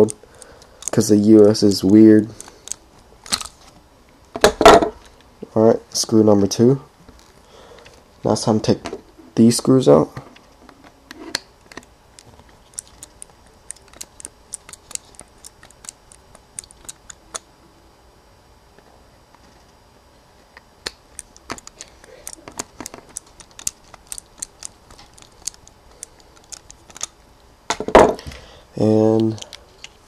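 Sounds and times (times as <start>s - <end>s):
screwdriver clicking on screws: 11.7s - 17.4s, 20.8s - 27.2s.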